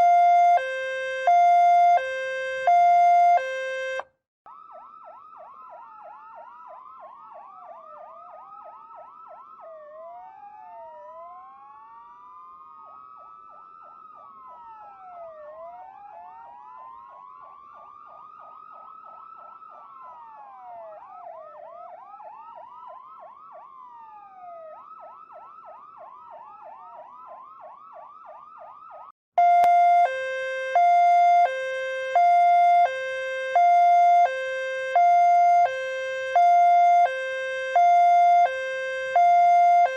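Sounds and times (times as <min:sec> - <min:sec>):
siren wails rising and falling: 0:00.0 - 0:39.9
siren yelp: 0:00.0 - 0:39.9
two-tone hi-lo siren: 0:00.0 - 0:39.9.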